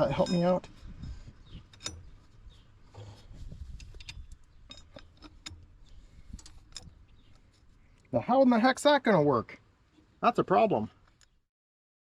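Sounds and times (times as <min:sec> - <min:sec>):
faint handling noise: 0:00.2 - 0:08.1.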